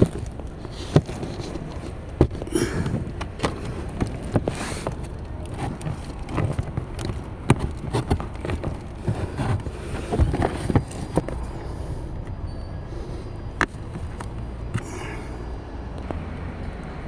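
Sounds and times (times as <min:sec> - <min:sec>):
hands clicking and knocking: 0:00.0 - 0:11.4.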